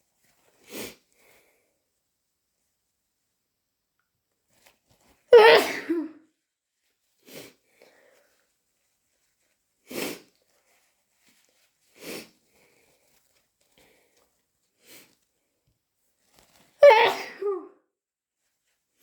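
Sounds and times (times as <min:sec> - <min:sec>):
person sneezing: 0:05.3 - 0:06.2, 0:16.8 - 0:17.7.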